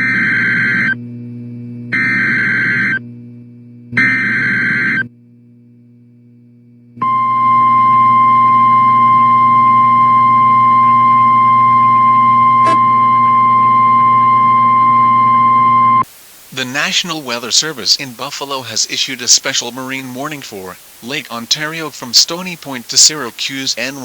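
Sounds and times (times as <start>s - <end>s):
weather radio alert tone: 0.0s - 0.9s, 4.0s - 5.1s, 7.0s - 24.0s
low steady hum: 0.0s - 24.0s
shrill digital data warble: 2.0s - 3.0s, 4.0s - 5.0s.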